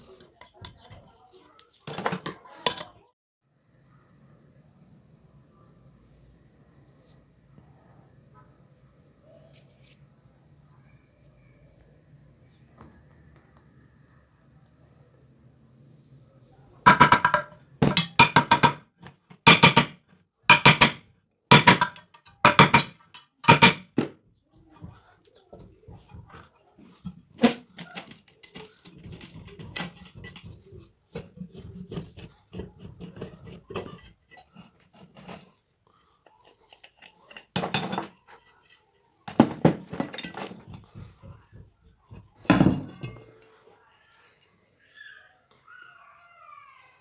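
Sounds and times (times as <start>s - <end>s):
metal parts knocking and clinking: 1.8s - 3.0s, 16.9s - 18.8s, 19.4s - 23.9s, 42.5s - 43.5s
metal fan parts clinking: 16.9s - 18.4s.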